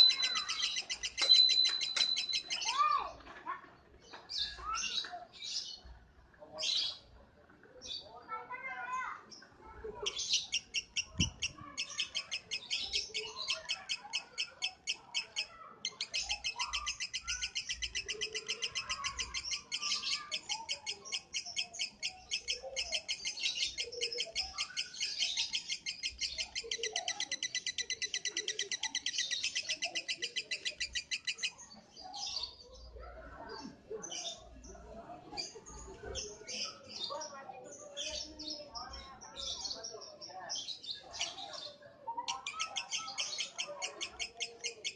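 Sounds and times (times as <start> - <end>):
lovebird trilling: 0.0 - 2.8, 10.2 - 31.6.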